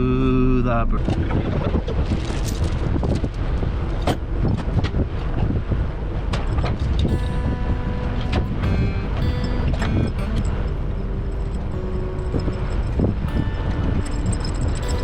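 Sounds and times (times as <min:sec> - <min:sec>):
wind buffeting microphone: 0:00.0 - 0:15.0
diesel truck engine rumbling: 0:07.1 - 0:15.0.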